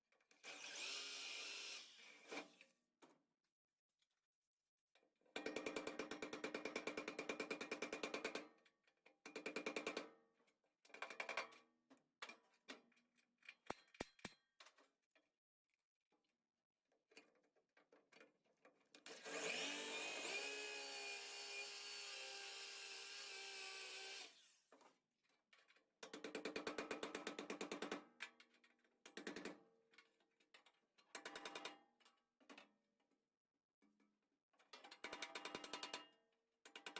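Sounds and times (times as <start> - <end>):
fast-stroking cutting tool: 19.2 - 24.5.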